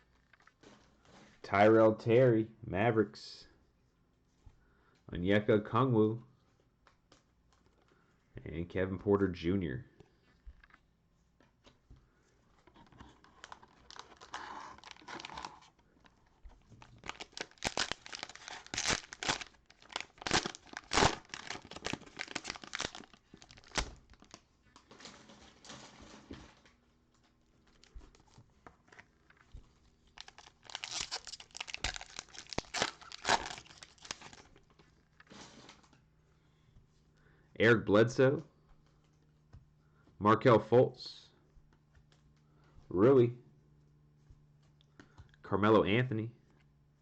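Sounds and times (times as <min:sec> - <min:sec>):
cellophane wrapper crinkling: 0:12.6 - 0:26.8, 0:27.6 - 0:36.0.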